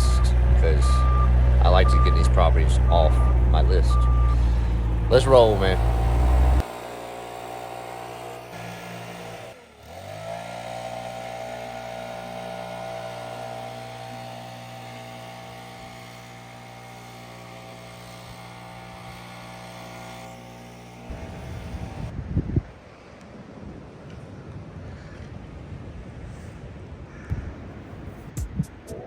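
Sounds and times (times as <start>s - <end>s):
vehicle engine running: 0.0s - 22.1s.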